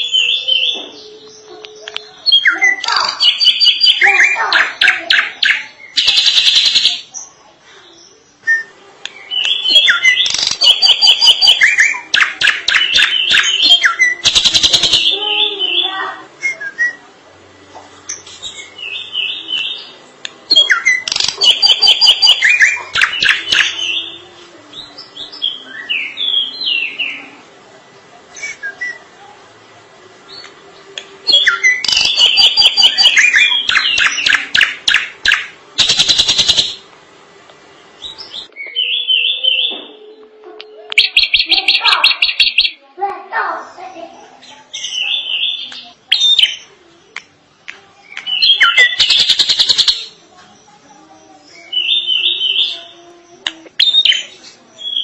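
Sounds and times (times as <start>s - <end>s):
bird harsh chattering and whistling: 2.2s - 7.3s, 8.0s - 17.0s, 20.5s - 24.2s, 31.2s - 36.8s, 41.0s - 42.8s, 43.6s - 47.3s, 48.0s - 55.0s.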